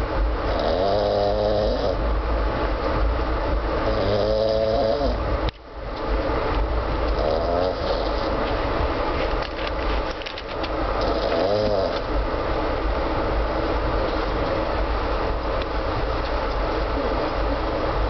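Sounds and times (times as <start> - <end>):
moving train rumble: 0.0 - 18.0
man snoring: 0.5 - 2.0, 3.8 - 5.2, 7.1 - 8.3, 11.0 - 12.1.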